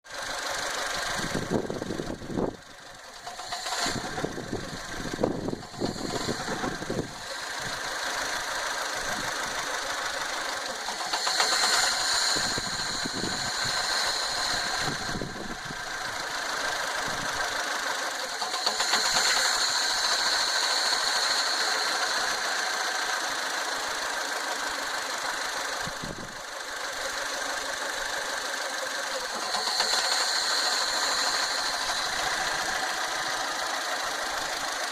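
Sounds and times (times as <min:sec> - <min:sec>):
car engine misfiring: 0:00.1 - 0:34.9.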